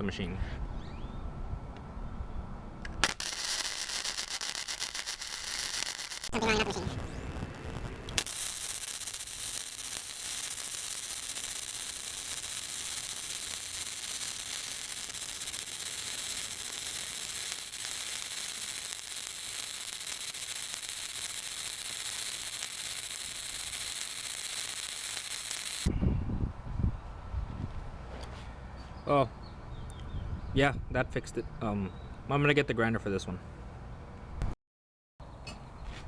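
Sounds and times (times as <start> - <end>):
welding arc crackling sizzle: 3.0 - 25.9.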